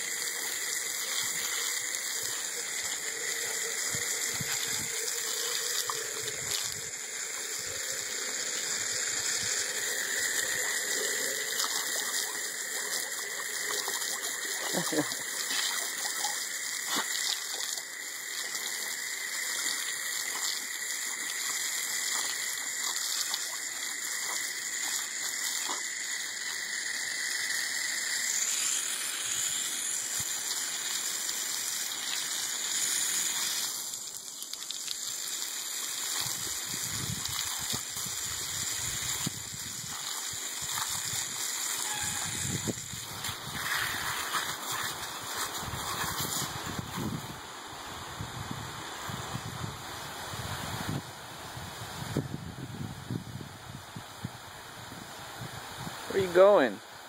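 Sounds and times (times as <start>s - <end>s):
garden hose spraying water: 0.0s - 57.0s.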